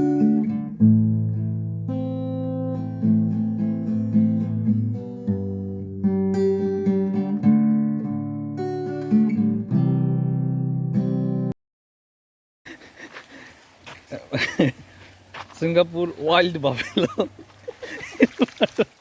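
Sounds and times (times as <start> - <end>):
acoustic guitar music: 0.0 - 11.6.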